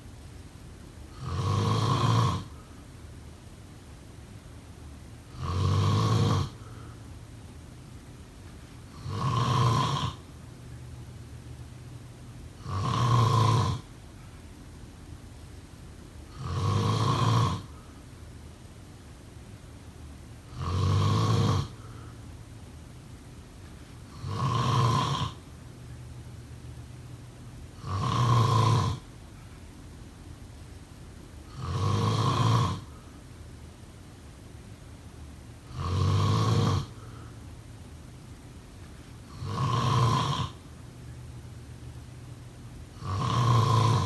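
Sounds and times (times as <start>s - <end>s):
person snoring: 1.1s - 2.6s, 5.3s - 6.9s, 8.9s - 10.2s, 12.6s - 13.9s, 16.3s - 17.8s, 20.5s - 22.1s, 24.1s - 25.4s, 27.8s - 29.1s, 31.5s - 33.0s, 35.7s - 37.3s, 39.3s - 40.6s, 43.0s - 44.0s.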